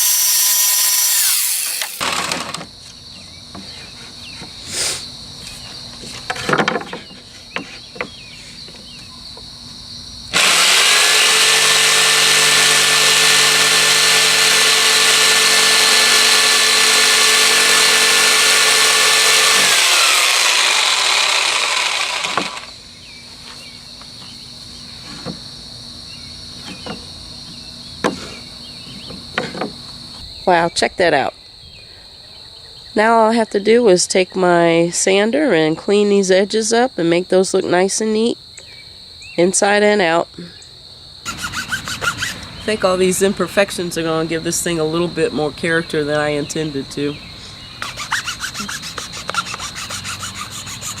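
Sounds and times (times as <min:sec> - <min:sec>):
power tool motor running: 0:00.0 - 0:02.6, 0:10.3 - 0:22.8
high insect chirr: 0:00.0 - 0:51.0.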